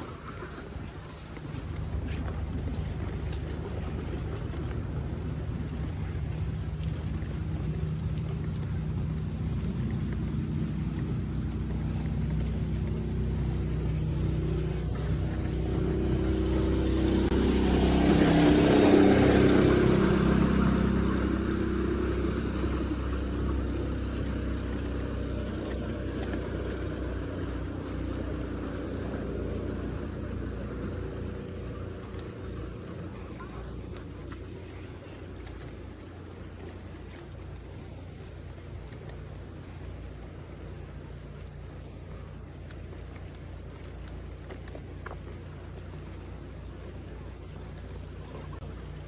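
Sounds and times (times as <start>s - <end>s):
vehicle passing by: 0.0s - 39.1s
steady low rumble: 0.0s - 49.0s.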